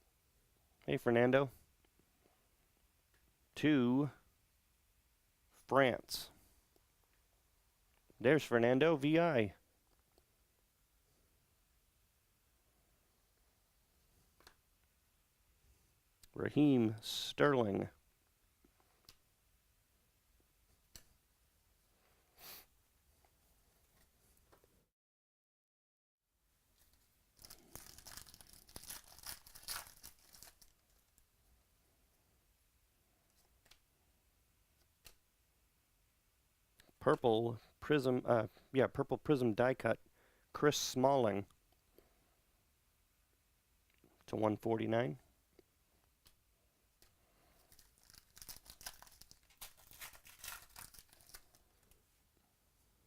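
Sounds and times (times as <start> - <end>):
foil wrapper crinkling: 27.4 - 31.2, 47.6 - 51.7.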